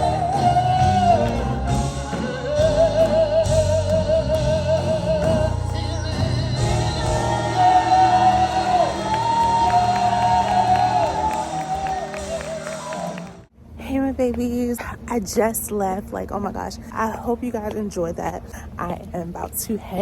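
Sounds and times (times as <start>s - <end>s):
person singing with vibrato: 0.0s - 13.4s
steady bass line: 0.0s - 13.4s
band accompaniment: 0.0s - 13.5s.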